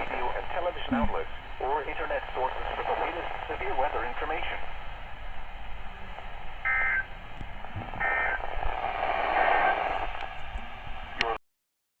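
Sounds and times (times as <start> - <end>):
radio hiss: 0.0 - 11.4
digital data tone bursts: 6.6 - 7.1, 8.0 - 8.4.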